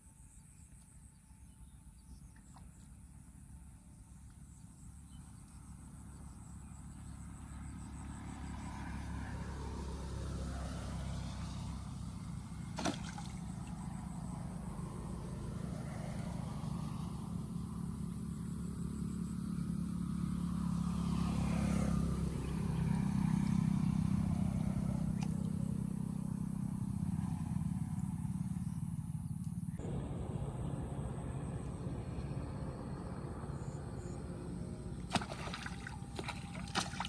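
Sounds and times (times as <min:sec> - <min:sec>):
motor vehicle passing: 0:08.0 - 0:18.3, 0:19.5 - 0:37.0.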